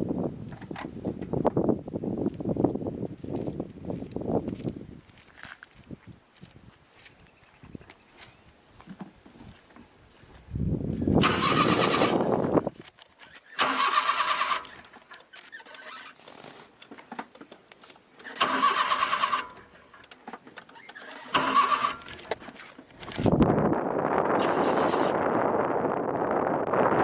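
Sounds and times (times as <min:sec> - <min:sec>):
starter motor cranking engine: 0:11.2 - 0:23.5, 0:24.3 - 0:25.4.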